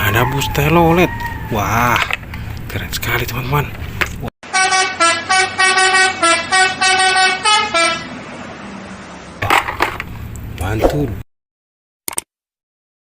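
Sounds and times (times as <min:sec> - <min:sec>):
bus horn playing tune: 0:04.4 - 0:08.3.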